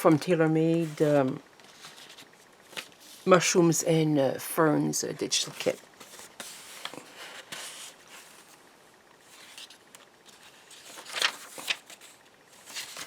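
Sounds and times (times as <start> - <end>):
paper rustling: 0.0 - 3.3, 5.4 - 8.6, 9.2 - 13.0.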